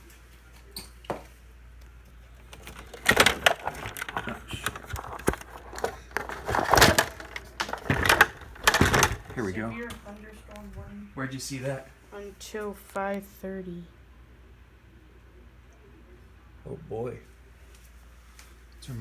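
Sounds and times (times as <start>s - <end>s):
clattering and knocking of handling: 2.5s - 9.4s.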